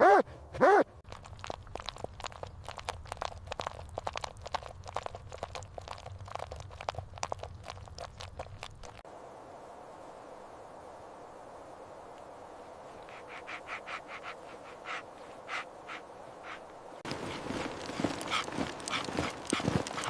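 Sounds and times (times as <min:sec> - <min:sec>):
dog crunching and chewing: 0:01.0 - 0:09.0, 0:13.1 - 0:20.0.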